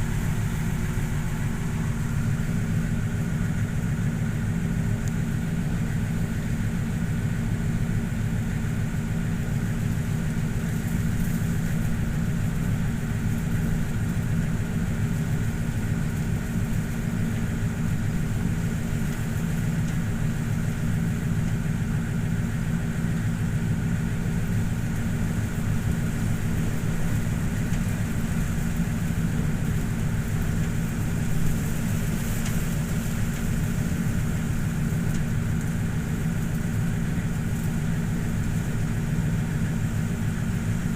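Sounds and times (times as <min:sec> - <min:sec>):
boat engine humming: 0:00.0 - 0:40.9.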